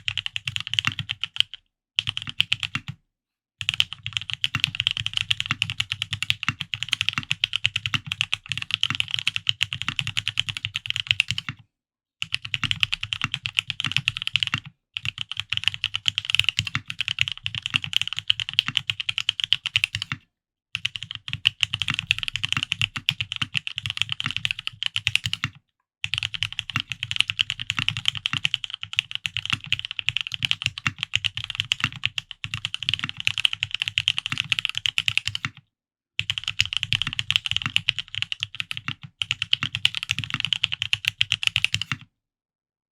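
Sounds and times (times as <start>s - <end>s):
fast mechanical keyboard typing: 0.0s - 2.9s, 3.6s - 11.5s, 12.2s - 20.2s, 20.8s - 25.5s, 26.1s - 35.6s, 36.2s - 42.1s.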